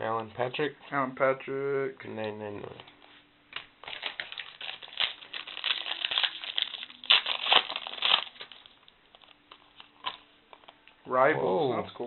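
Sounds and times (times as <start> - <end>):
foil wrapper crinkling: 3.8 - 10.2.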